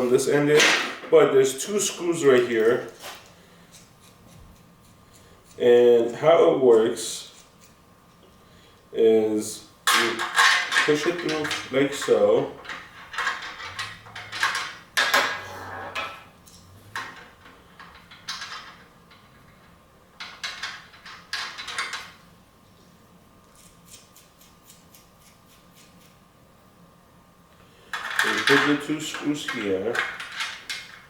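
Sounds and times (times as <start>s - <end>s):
metal and plastic parts clattering: 9.9s - 11.7s, 12.6s - 15.4s, 27.9s - 31.0s.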